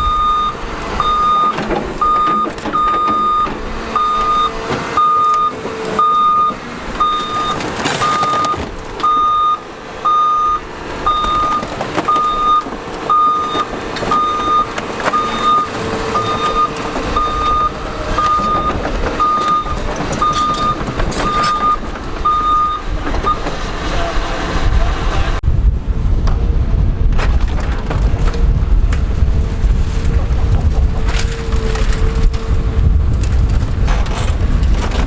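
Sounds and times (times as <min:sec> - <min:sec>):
backup alarm beeping: 0:00.0 - 0:23.6
machine engine rumble: 0:00.0 - 0:35.0.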